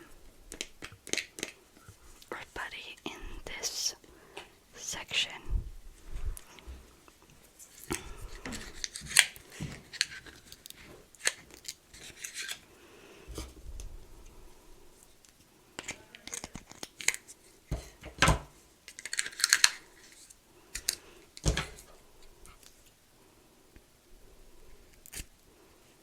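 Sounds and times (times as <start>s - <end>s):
plastic packaging crackling: 15.8s - 17.4s, 18.9s - 21.9s.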